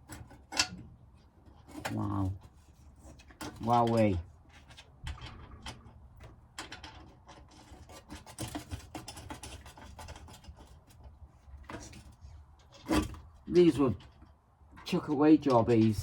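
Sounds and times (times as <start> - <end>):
clicks and scratches of bolts and nuts: 0.0 - 16.0.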